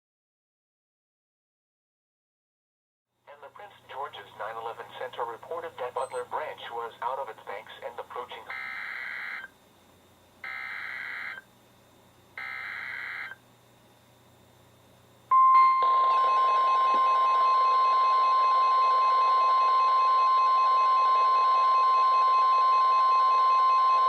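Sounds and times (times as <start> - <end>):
radio static: 3.3 - 8.5
steady warning alarm tone: 8.2 - 9.5, 10.4 - 11.5, 12.4 - 13.4, 15.3 - 24.0.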